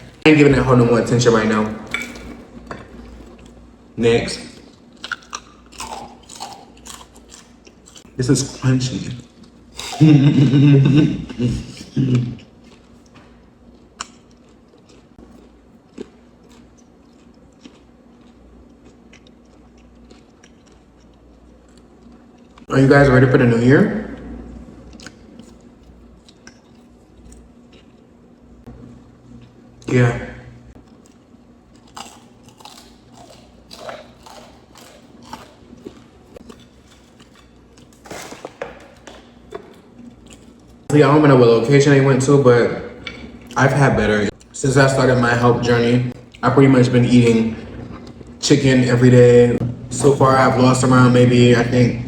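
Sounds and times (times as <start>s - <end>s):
faint chewing: 4.4s - 8.2s, 11.3s - 22.7s, 24.9s - 28.6s, 30.7s - 40.9s.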